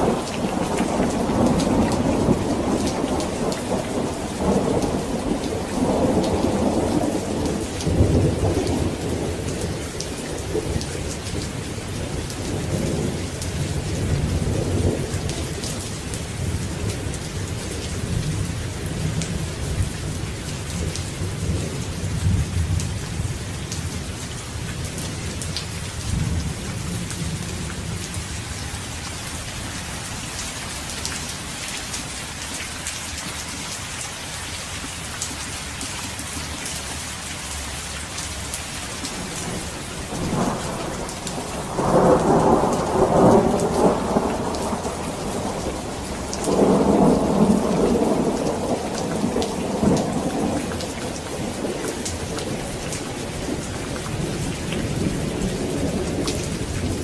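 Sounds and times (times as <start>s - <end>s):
thunder rumbling: 0.0s - 24.1s, 39.0s - 57.0s
heavy rain: 0.0s - 57.0s.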